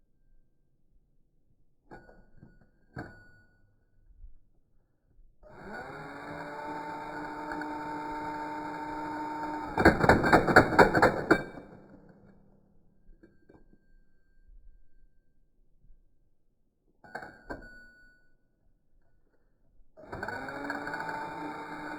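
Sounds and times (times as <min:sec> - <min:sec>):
impact wrench motor spinning: 0:05.5 - 0:11.4, 0:20.0 - 0:21.9.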